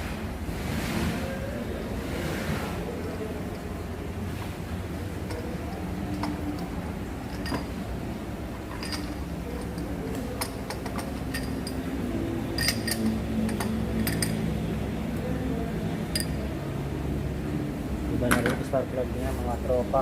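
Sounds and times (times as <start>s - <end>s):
metal tools clinking: 5.3s - 7.8s, 8.7s - 14.5s, 16.1s - 16.4s.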